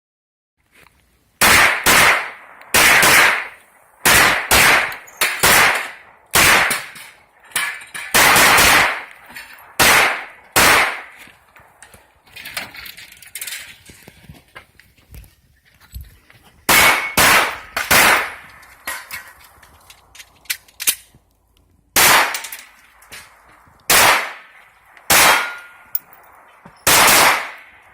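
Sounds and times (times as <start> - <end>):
pistol shots: 1.4 - 7.0, 8.0 - 11.2, 16.7 - 18.5, 22.0 - 22.5, 23.9 - 27.9
soft scattered sounds: 8.9 - 26.9.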